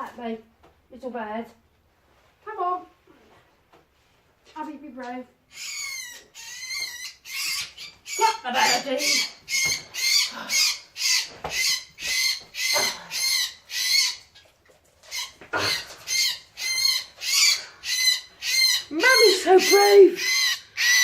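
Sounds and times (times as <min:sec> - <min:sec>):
bird shrill distress calls: 0:05.5 - 0:14.2, 0:15.1 - 0:21.0.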